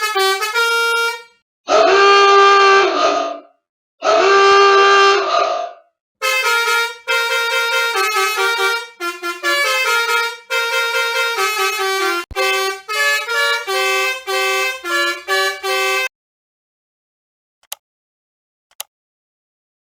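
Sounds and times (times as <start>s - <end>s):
vehicle horn honks playing a tune: 0.0s - 2.7s, 6.2s - 16.1s.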